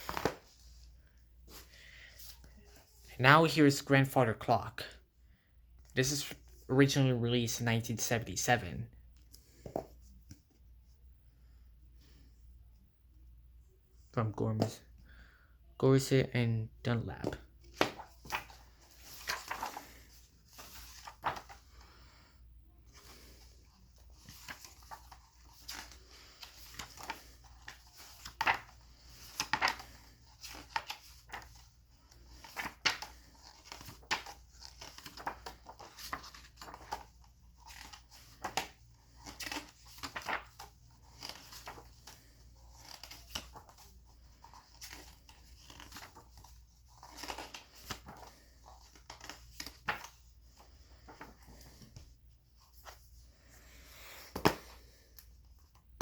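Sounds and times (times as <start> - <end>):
book pages rustling and turning: 0.0 - 3.1, 9.0 - 11.0, 17.2 - 56.0.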